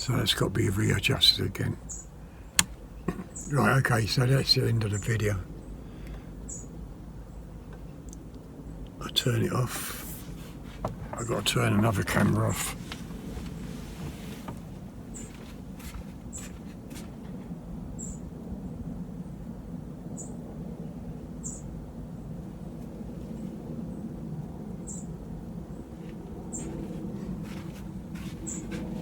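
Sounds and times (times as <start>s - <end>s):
low background rumble: 0.0s - 29.0s
small bird chirping: 1.8s - 3.7s, 6.4s - 6.8s, 15.1s - 15.4s, 28.4s - 28.8s.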